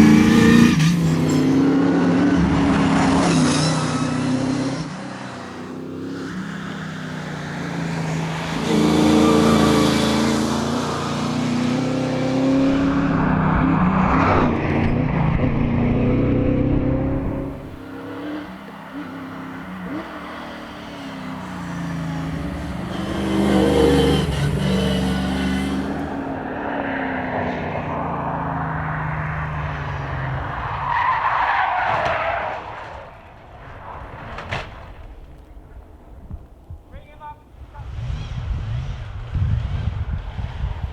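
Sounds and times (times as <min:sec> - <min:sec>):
race car engine revving: 0:00.0 - 0:30.8
tyres squealing: 0:17.6 - 0:26.3.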